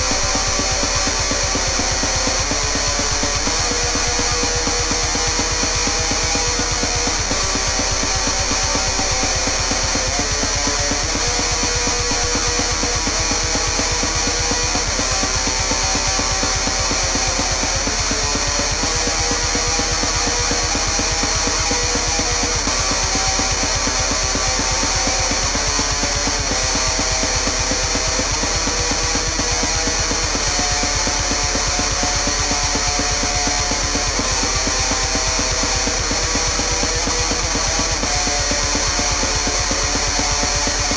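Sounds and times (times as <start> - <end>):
cymbal crash: 0.0 - 16.8
distorted electric guitar riffs: 0.0 - 40.9
fast drum beat: 0.0 - 40.9.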